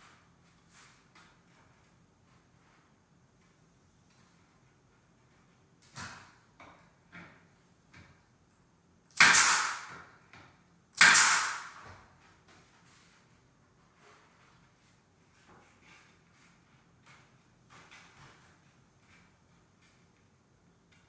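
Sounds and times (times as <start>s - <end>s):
nail gun bang with hiss: 9.1s - 10.1s, 11.0s - 12.0s.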